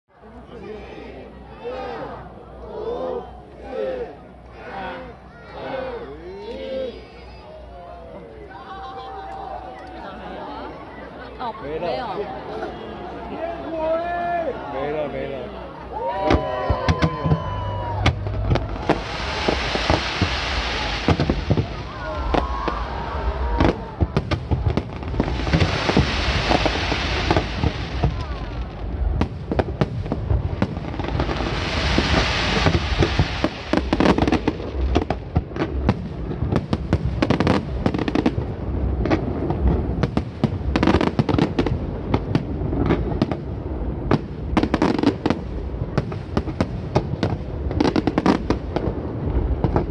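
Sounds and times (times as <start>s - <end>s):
fireworks bangs and booms: 16.2s - 49.9s
fireworks hissing crackle: 16.5s - 49.9s.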